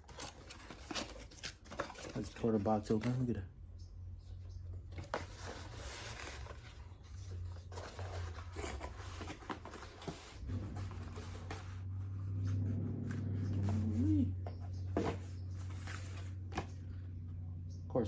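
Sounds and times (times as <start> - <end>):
packaging rustling and scraping: 0.0 - 3.2, 4.7 - 17.0
steady low hum: 10.2 - 18.0.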